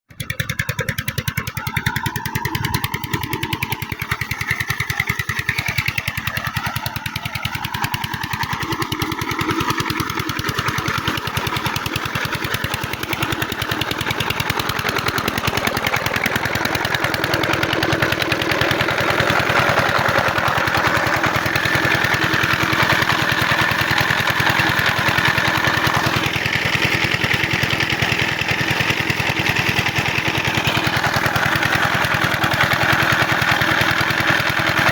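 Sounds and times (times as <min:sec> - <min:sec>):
diesel engine knocking: 0:00.1 - 0:34.9.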